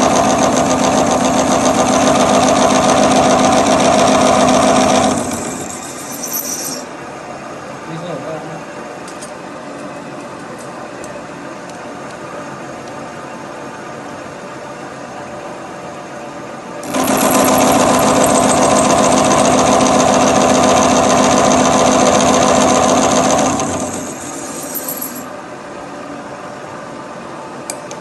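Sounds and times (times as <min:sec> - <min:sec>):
milling machine running hum: 0:00.0 - 0:07.9, 0:15.3 - 0:27.7
milling cutter cutting steel: 0:04.3 - 0:06.9, 0:16.8 - 0:20.7, 0:23.2 - 0:25.3.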